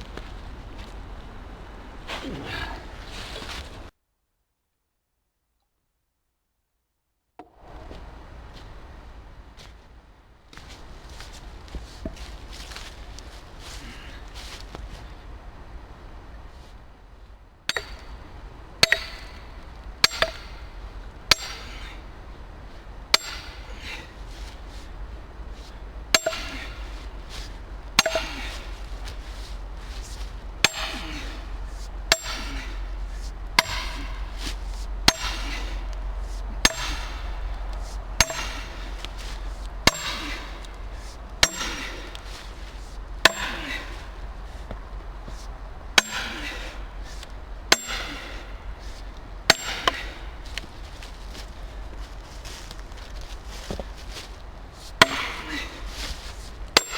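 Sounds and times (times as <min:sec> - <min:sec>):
axe chopping wood: 0:17.7 - 0:22.1, 0:23.2 - 0:24.6, 0:25.6 - 0:52.8, 0:54.9 - 0:56.9.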